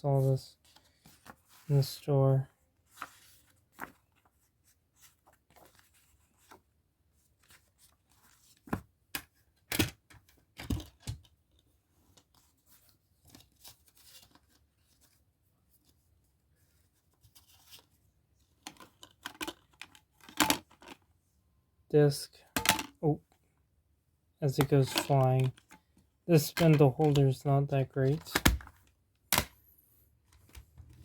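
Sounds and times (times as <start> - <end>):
plastic case clicks and snaps: 28.2 - 29.6.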